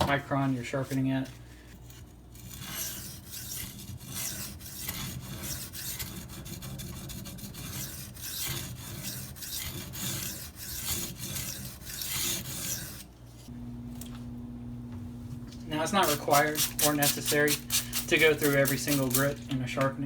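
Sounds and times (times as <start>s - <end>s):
knife scraping on sharpening stone: 1.8s - 13.1s, 16.0s - 19.4s.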